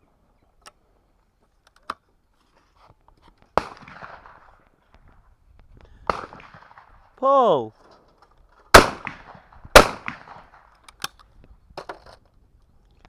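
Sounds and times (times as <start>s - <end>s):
shotgun shot with echo: 8.7s - 10.5s.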